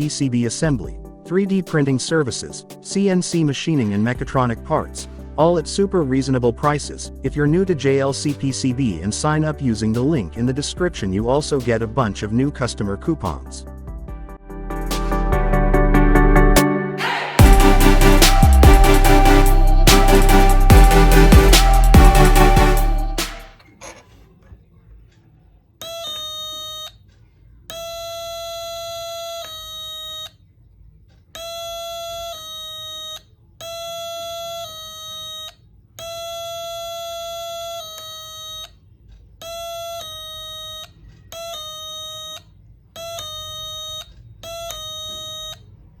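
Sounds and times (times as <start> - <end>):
buzzy electronic two-note chime: 17.4 - 23.5.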